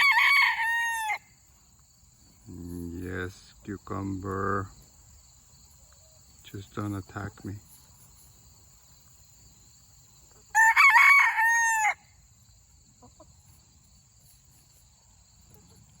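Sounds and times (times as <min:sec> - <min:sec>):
rooster crowing: 0:00.0 - 0:01.4, 0:10.4 - 0:12.2.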